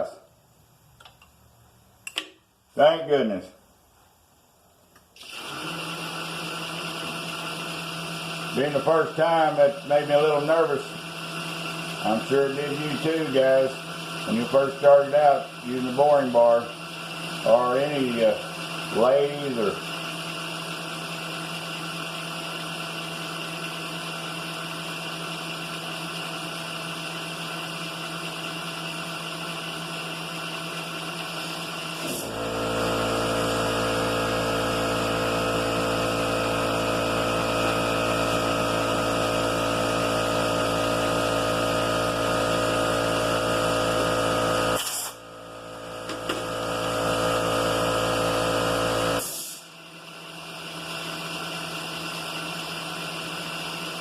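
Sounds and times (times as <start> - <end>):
milling machine running: 5.2 - 54.0
low motor hum: 32.2 - 49.2.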